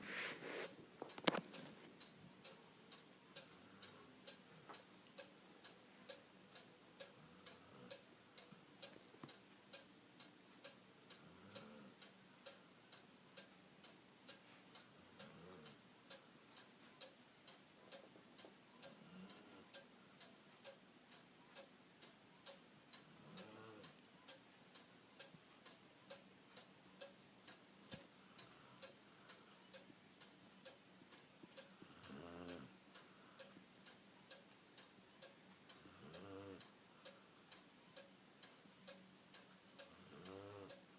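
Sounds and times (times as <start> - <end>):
steady ticking: 0.6 - 40.9
dog snoring softly: 36.0 - 36.7, 40.1 - 40.8.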